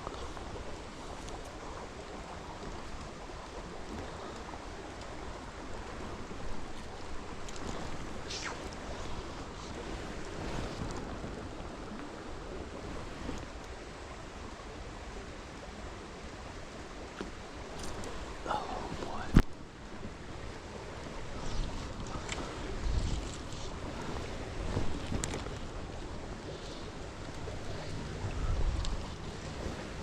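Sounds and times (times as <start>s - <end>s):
faint clicks and splashes: 0.0s - 12.2s, 21.3s - 30.0s
stream water flowing: 0.0s - 30.0s.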